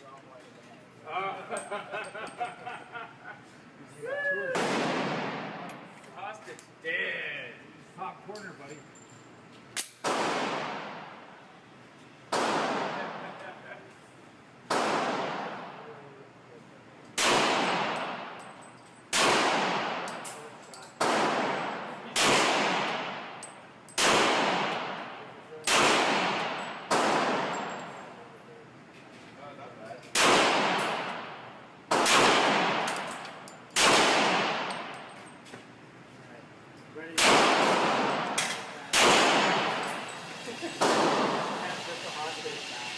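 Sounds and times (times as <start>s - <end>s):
pistol shots with echo: 4.6s - 5.7s, 10.0s - 11.2s, 12.3s - 13.4s, 14.7s - 15.8s, 17.2s - 18.5s, 19.1s - 20.4s, 21.0s - 28.1s, 30.1s - 35.1s, 37.2s - 40.2s, 40.8s - 41.6s.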